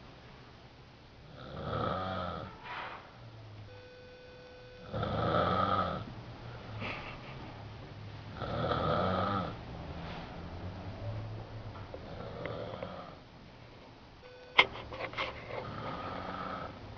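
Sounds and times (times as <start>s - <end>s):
person snoring: 1.3s - 2.5s, 4.8s - 6.1s, 8.3s - 9.6s, 12.0s - 13.2s, 15.6s - 16.8s
quiet breathing: 9.6s - 11.4s, 12.0s - 13.9s, 15.2s - 16.9s.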